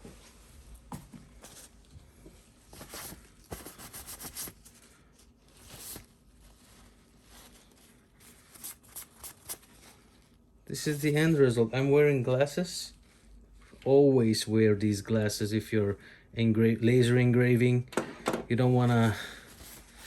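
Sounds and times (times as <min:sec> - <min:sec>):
soft rustling and scraping: 0:00.0 - 0:11.7, 0:18.7 - 0:20.0.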